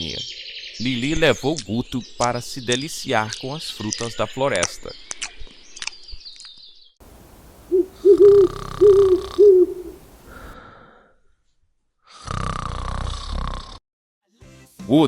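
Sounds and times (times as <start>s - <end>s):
owl hooting: 7.0s - 10.6s
cartoon snore: 12.1s - 13.8s.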